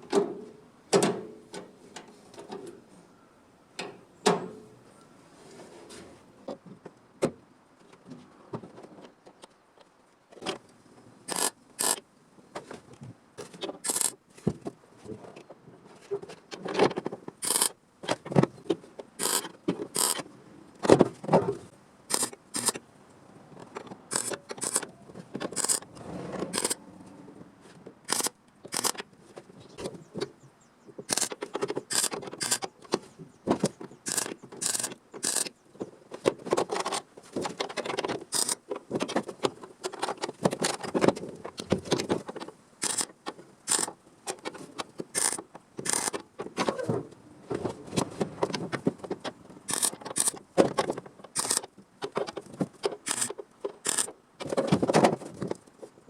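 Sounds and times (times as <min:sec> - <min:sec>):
metal scraping: 0:25.5 - 0:26.8.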